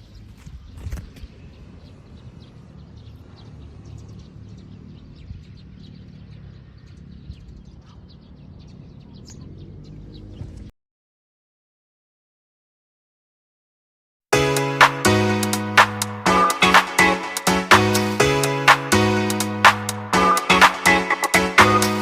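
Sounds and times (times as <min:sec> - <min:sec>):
wind rumble on microphone: 0:00.0 - 0:03.4, 0:04.0 - 0:10.7
birds chirping: 0:00.0 - 0:10.7, 0:14.4 - 0:22.0.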